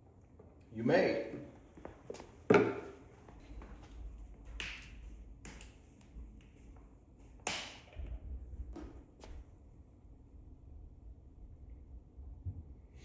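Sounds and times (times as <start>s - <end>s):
taps of handling bottles and tools: 2.1s - 3.0s.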